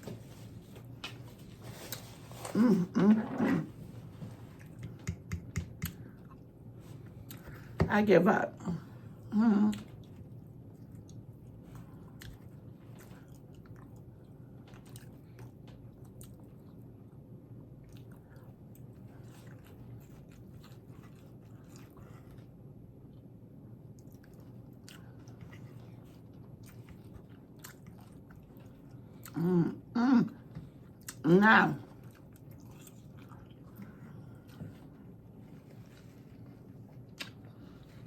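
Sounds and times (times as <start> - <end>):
crunchy chewing mouth sounds: 24.0 - 29.5.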